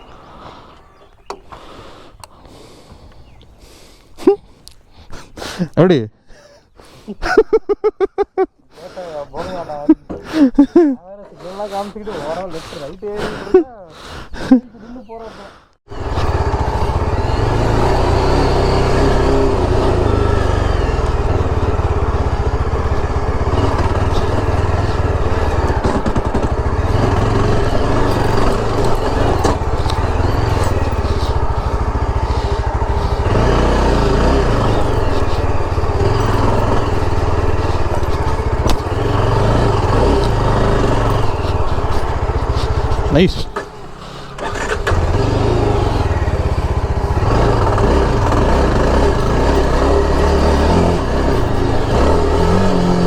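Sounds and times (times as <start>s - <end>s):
motorcycle engine running: 15.9s - 53.0s.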